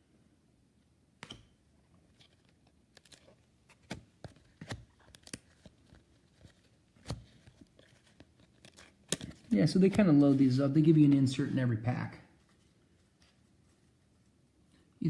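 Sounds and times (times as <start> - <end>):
cards clicking while leafed through: 2.2 - 10.1.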